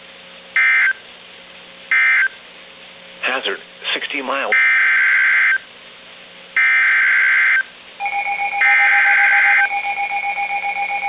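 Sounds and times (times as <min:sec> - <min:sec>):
pulsing alarm tone: 0:06.6 - 0:11.0.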